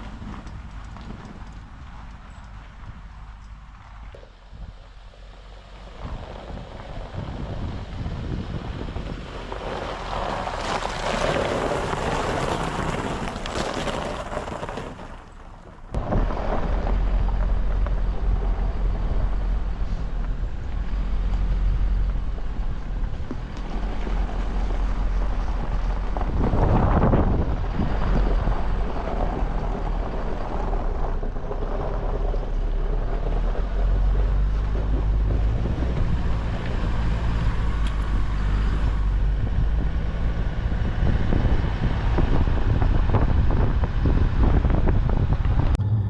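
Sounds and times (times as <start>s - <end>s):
road and engine noise: 0.0s - 46.0s
wind buffeting microphone: 5.7s - 15.0s, 15.8s - 46.0s
loud low rumble: 15.8s - 34.3s, 34.9s - 46.0s.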